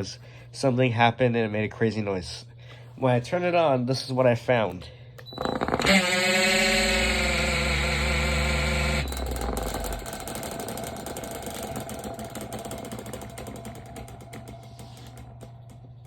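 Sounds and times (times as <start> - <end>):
electric fan buzzing: 5.2 - 16.0
fast ticking rattle: 5.4 - 16.0.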